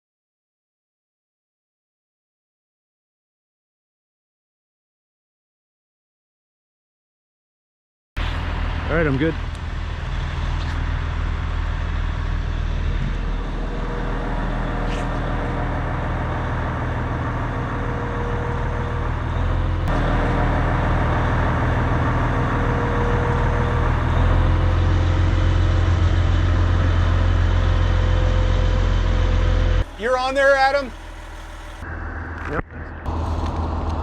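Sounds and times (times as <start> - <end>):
diesel engine running: 8.2 - 34.0
engine whine: 8.2 - 34.0.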